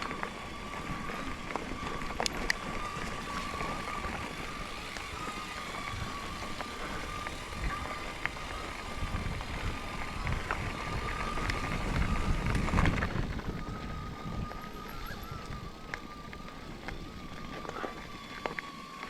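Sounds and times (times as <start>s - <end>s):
bike tyres and rattle: 0.0s - 19.0s
small clicks: 0.0s - 19.0s
thin steady whine: 0.0s - 19.0s.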